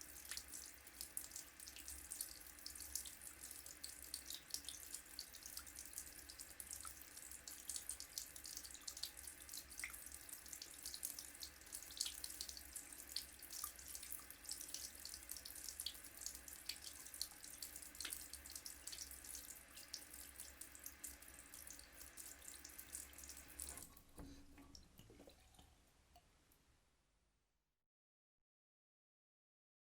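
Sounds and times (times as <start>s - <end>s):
faint water drips: 0.0s - 26.6s
tap water running into sink: 4.1s - 25.6s.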